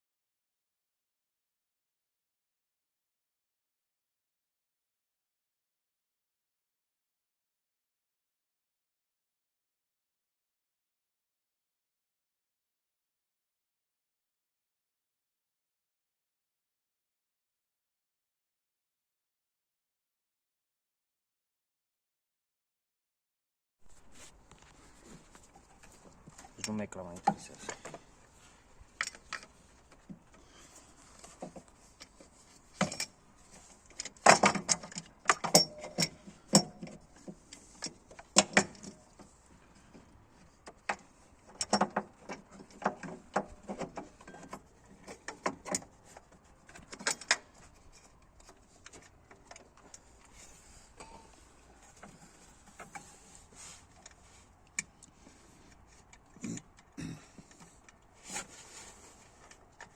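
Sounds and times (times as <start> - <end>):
metal tools clinking and knocking: 32.7 - 37.0.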